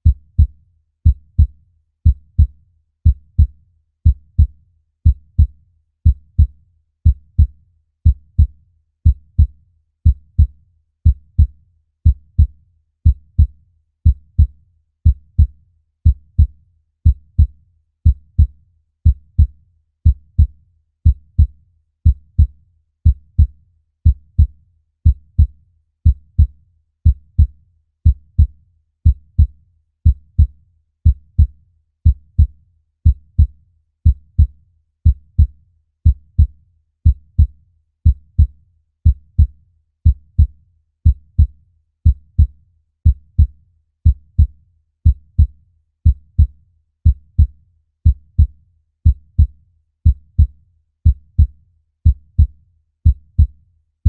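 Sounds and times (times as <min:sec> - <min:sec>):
heartbeat thumps: 0:50.1 - 0:50.5, 0:51.1 - 0:51.5, 0:52.1 - 0:53.6.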